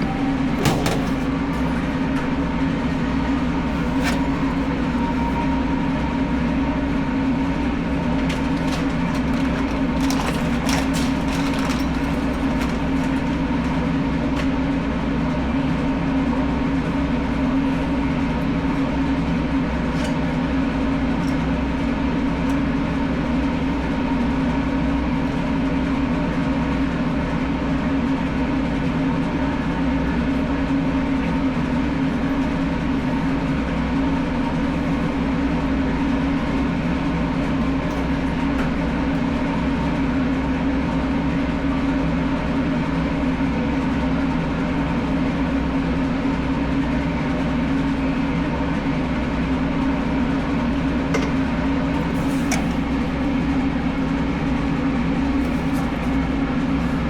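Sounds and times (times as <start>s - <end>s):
machine hum: 0.0s - 24.6s.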